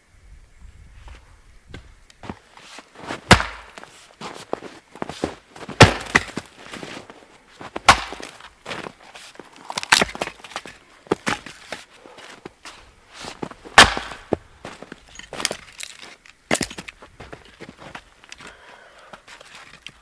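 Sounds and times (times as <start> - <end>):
axe chopping firewood: 3.0 - 4.6, 5.2 - 7.0, 7.6 - 9.0, 9.7 - 11.8, 13.3 - 16.9.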